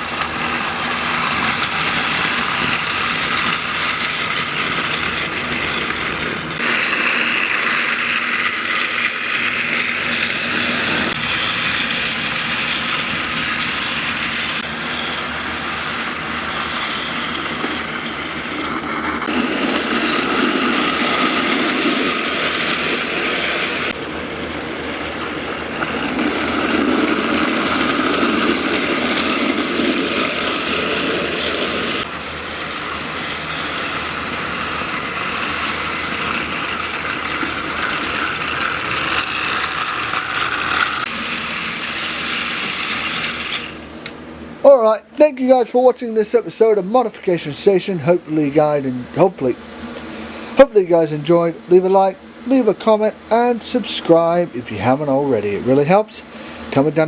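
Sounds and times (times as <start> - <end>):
toy train motor whir: 0.0 - 24.0, 24.7 - 45.0
wheel and gear clatter: 0.0 - 57.0.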